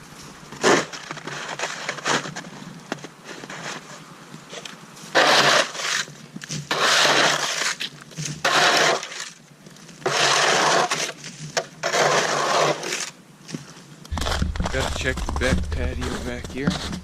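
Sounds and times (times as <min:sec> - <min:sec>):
snow shovel scraping snow: 0:00.5 - 0:02.6, 0:03.2 - 0:04.0, 0:05.1 - 0:09.4, 0:10.0 - 0:13.2, 0:14.1 - 0:17.0.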